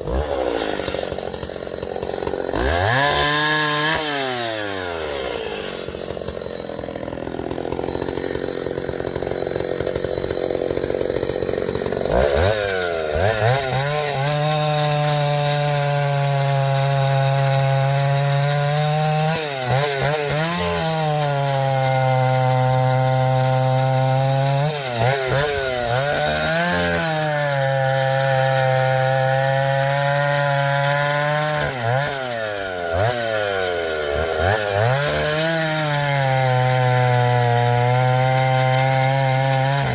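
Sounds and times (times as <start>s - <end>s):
chainsaw idling and cutting wood: 0.0s - 39.9s.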